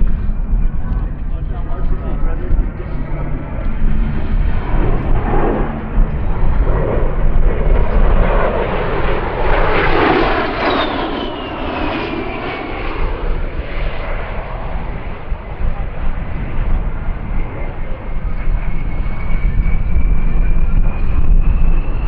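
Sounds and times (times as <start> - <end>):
falling engine whine: 0.0 - 22.0
jet flying past: 0.0 - 22.0.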